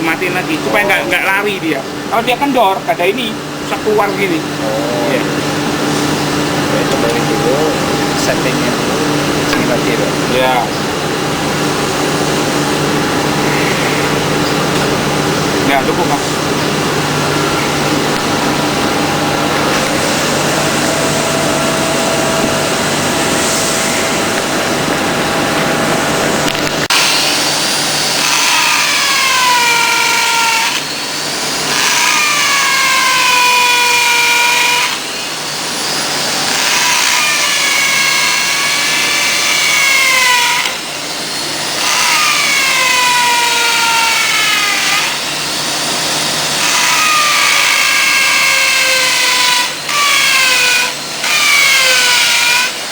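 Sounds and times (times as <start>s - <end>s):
steady machine hum: 0.0s - 32.5s
power tool whining: 3.9s - 52.9s.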